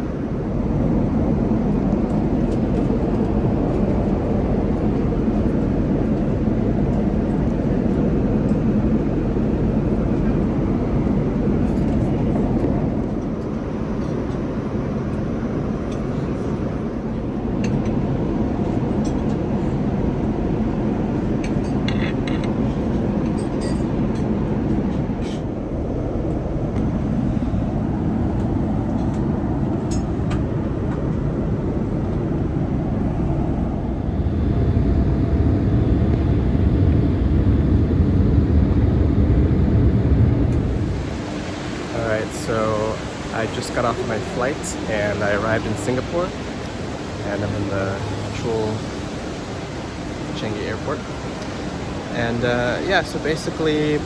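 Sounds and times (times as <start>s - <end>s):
airliner cabin rumble: 0.0s - 54.0s.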